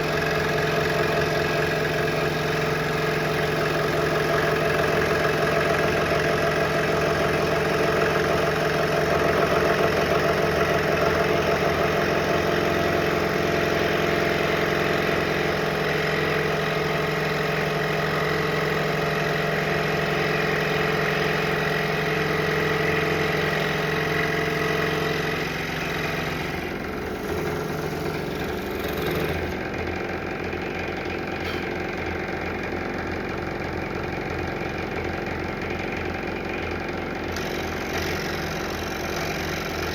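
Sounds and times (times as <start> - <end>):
scroll saw cutting wood: 4.2 - 29.6, 37.3 - 39.9.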